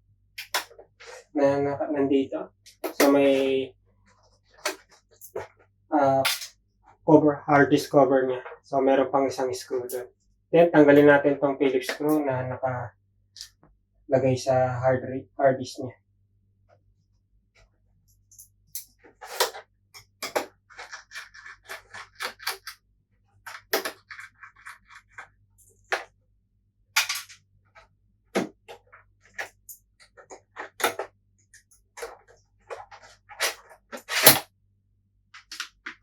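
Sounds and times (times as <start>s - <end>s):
screwdriver and plastic parts clicking: 0.4s - 1.2s, 2.7s - 3.4s, 18.8s - 22.8s, 23.5s - 25.3s, 28.4s - 34.4s, 35.4s - 36.0s
scratchy scrapes: 0.4s - 1.3s, 19.0s - 22.7s, 23.4s - 26.0s, 31.9s - 34.4s.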